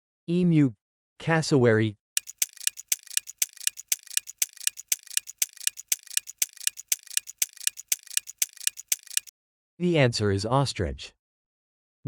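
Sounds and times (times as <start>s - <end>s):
clock ticking: 2.2s - 9.3s.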